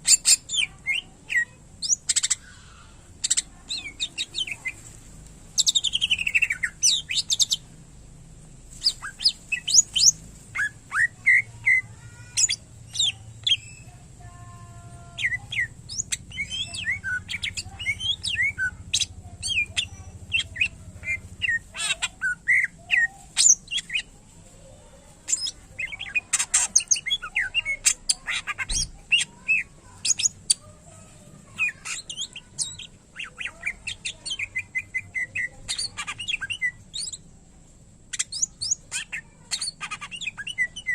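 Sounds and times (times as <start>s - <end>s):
bird singing chirps and whistles: 38.1s - 40.9s.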